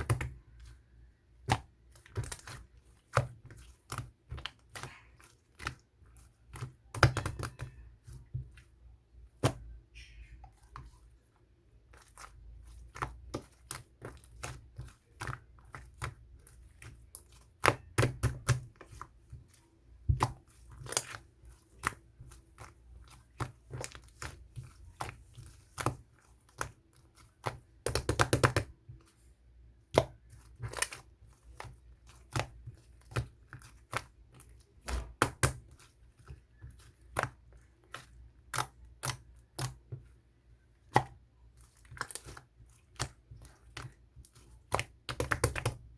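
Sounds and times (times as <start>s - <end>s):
slime clicking and crackling: 11.8s - 29.2s, 40.8s - 45.9s.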